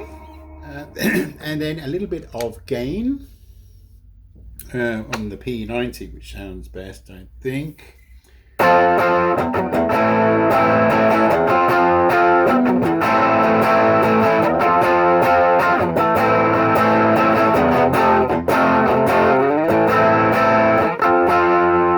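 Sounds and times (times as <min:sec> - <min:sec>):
overdriven electric guitar: 0:08.6 - 0:21.9.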